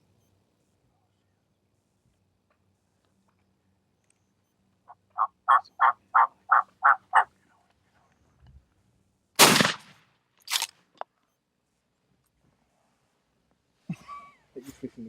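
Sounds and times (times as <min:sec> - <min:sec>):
turkey yelps: 0:04.9 - 0:07.3
shotgun blast: 0:09.4 - 0:10.7.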